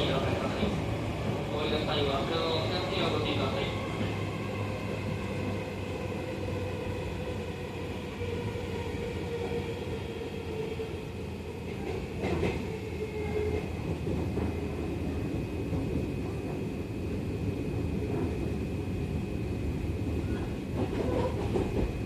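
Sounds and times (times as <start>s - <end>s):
train wheels rumbling on rails: 0.0s - 22.0s.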